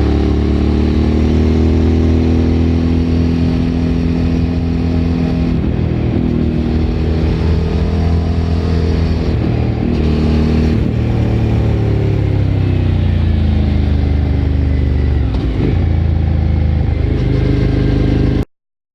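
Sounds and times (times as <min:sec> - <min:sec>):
motorcycle engine under way: 0:00.0 - 0:18.5.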